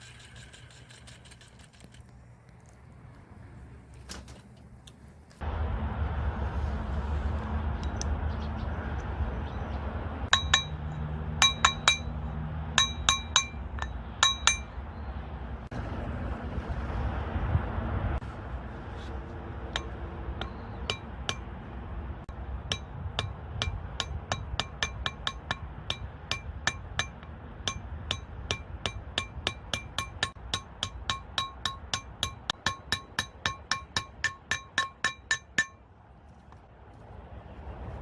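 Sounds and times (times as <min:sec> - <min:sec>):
metal tapping on metal: 0:10.3 - 0:14.8, 0:19.7 - 0:21.6, 0:22.6 - 0:35.8.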